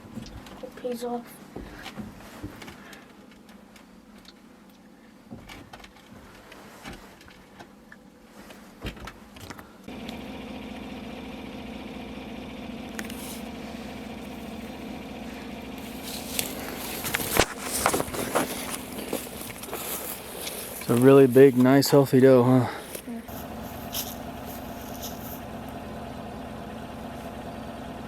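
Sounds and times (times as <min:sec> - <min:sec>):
vehicle engine starting and running: 0:09.9 - 0:28.0.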